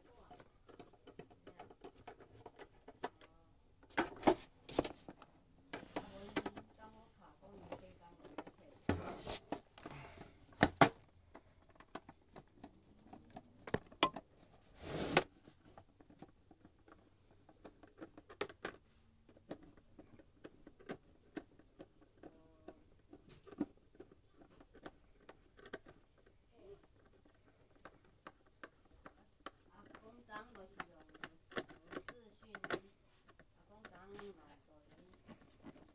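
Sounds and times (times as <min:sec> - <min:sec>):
tools clicking and tapping: 0:10.6 - 0:14.3.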